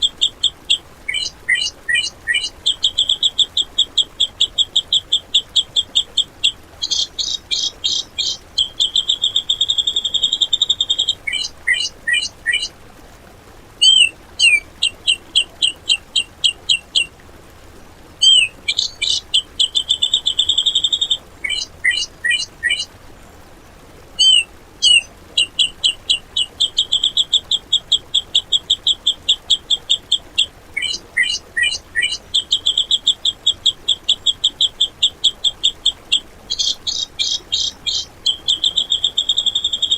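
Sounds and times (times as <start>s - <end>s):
bulbul singing harsh staccato runs: 0.0s - 12.7s, 13.8s - 17.1s, 18.2s - 22.9s, 24.2s - 39.9s.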